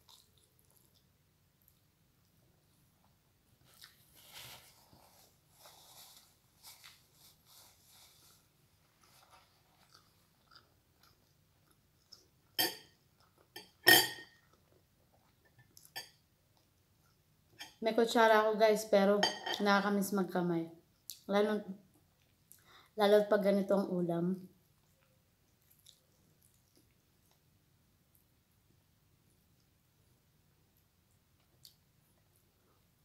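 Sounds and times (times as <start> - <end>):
person chewing: 0.0 - 2.4, 3.6 - 4.1, 9.0 - 17.3, 24.8 - 27.5.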